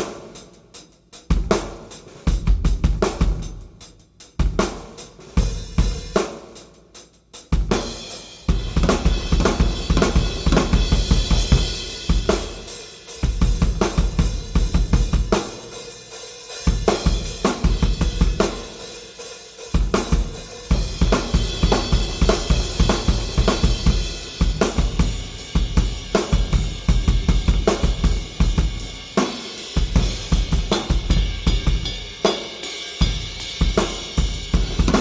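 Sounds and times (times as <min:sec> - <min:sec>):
drum kit groove: 0:00.0 - 0:35.0
hi-hats and cymbals: 0:00.0 - 0:35.0
bass drum: 0:08.5 - 0:12.6, 0:13.2 - 0:15.4, 0:19.8 - 0:29.1, 0:29.8 - 0:32.0, 0:33.0 - 0:35.0.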